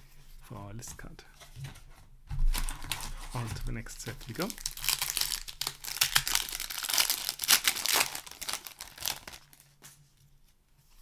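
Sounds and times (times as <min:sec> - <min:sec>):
foil wrapper tearing and crinkling: 0:02.5 - 0:09.8.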